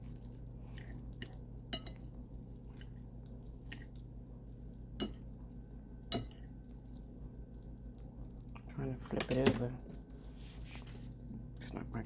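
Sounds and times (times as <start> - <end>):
utensil clinking against dish: 6.0 - 6.5.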